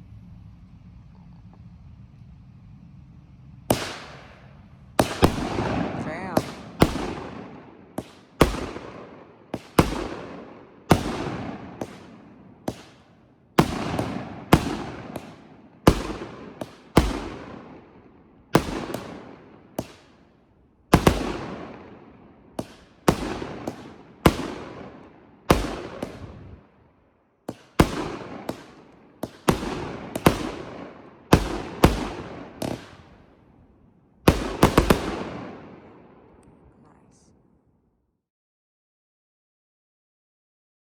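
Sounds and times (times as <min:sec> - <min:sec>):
firework shots banging: 0:03.7 - 0:26.8, 0:27.5 - 0:33.6, 0:34.2 - 0:36.7.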